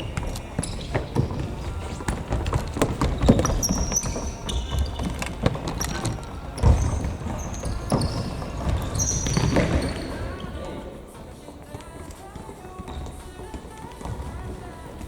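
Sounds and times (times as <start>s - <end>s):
ball kicked and bouncing: 0.0s - 10.7s
shoes squeaking on court floor: 0.0s - 15.0s.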